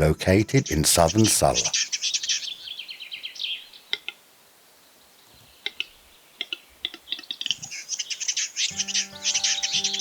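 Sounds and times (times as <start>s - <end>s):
songbird trilling: 0.6s - 4.2s, 5.3s - 10.0s
short bird chirps: 5.6s - 10.0s.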